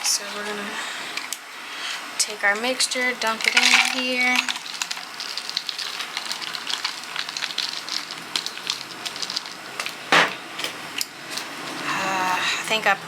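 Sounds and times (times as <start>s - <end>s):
potting mix pouring into pot: 3.4s - 10.1s.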